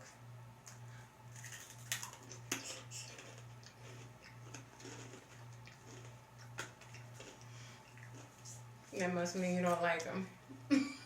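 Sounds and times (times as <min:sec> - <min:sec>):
steady low hum: 0:00.0 - 0:11.0
crunching snack sticks: 0:01.3 - 0:08.3.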